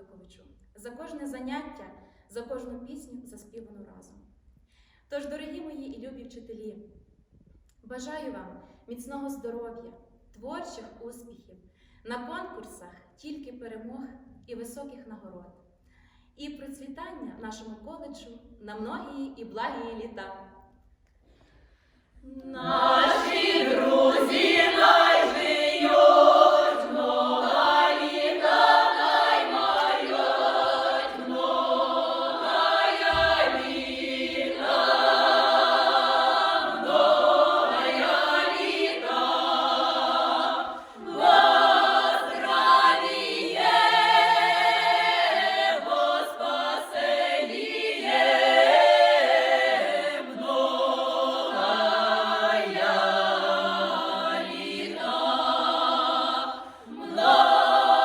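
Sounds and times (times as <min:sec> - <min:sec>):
group singing a cappella: 0:22.2 - 0:58.0.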